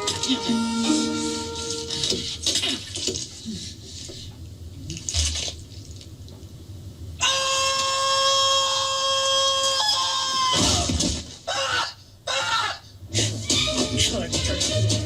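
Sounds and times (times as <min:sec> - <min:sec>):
long high-pitched scream: 0:07.2 - 0:10.8.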